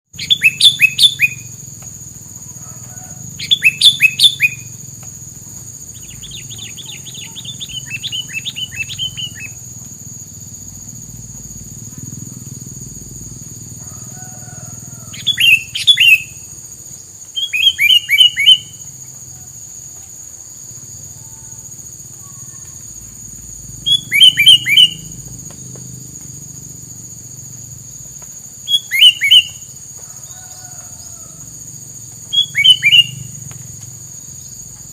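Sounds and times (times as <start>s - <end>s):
songbird chirping in bursts: 0.1s - 10.0s, 14.7s - 19.5s, 21.2s - 25.4s, 28.5s - 29.9s, 32.1s - 33.6s.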